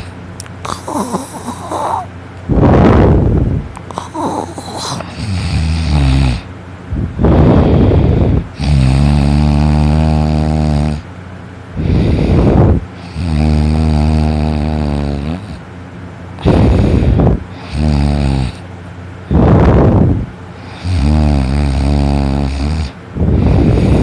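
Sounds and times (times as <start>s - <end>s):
loud snoring: 0.7s - 2.8s, 3.9s - 6.5s, 7.2s - 11.1s, 11.8s - 15.6s, 16.4s - 18.7s, 19.3s - 24.0s.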